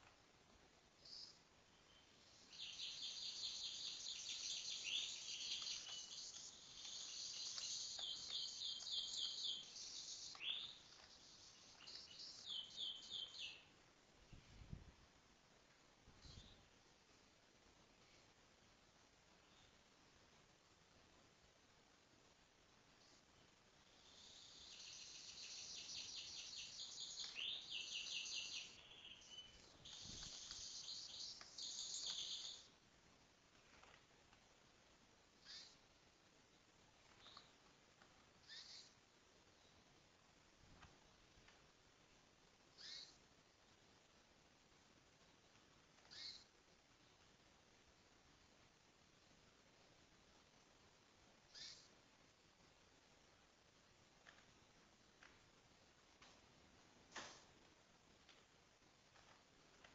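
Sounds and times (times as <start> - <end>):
songbird singing: 0.8 - 14.8, 16.1 - 16.8, 19.3 - 19.9, 23.0 - 32.8, 35.3 - 36.0, 36.6 - 40.2, 42.6 - 43.4, 45.2 - 47.3, 51.4 - 52.0.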